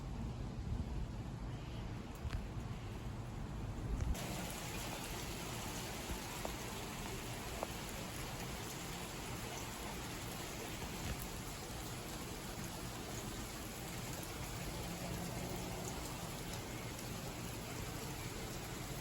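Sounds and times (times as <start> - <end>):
heavy rain: 4.2 - 19.0.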